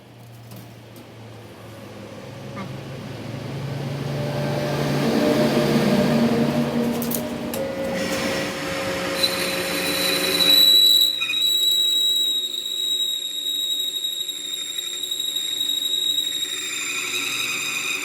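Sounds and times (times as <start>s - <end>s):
high-pitched machine squeal: 7.6s - 18.0s.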